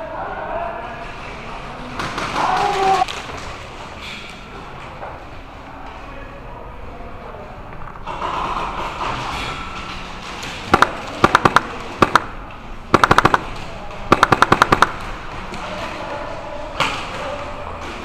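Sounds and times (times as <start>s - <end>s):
airsoft guns firing: 10.6s - 15.2s.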